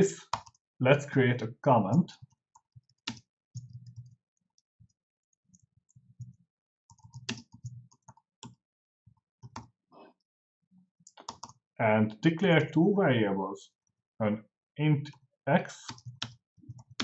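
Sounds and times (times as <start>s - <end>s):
typing on keyboard: 0.2s - 0.6s, 2.2s - 4.6s, 6.9s - 8.6s, 9.4s - 9.7s, 11.1s - 11.6s, 15.9s - 17.0s.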